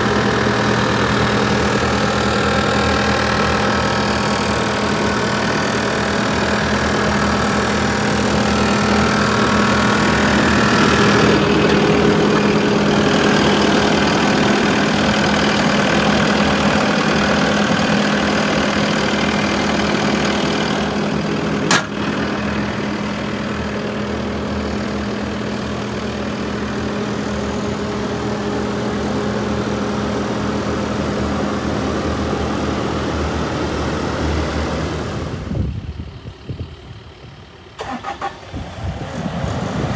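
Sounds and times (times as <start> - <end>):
diesel engine idling: 0.0 - 39.9
sharp click: 21.7 - 22.0.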